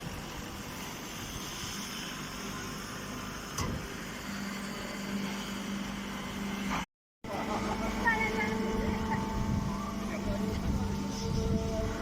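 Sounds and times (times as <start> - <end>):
machine running: 4.0 - 12.0
low hum: 7.3 - 12.0.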